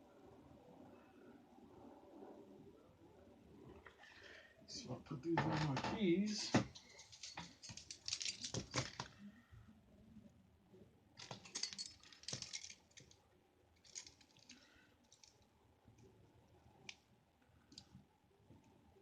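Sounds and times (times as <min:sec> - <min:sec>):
keys clinking on keyring: 0:06.3 - 0:09.2, 0:11.2 - 0:13.2, 0:13.8 - 0:15.3.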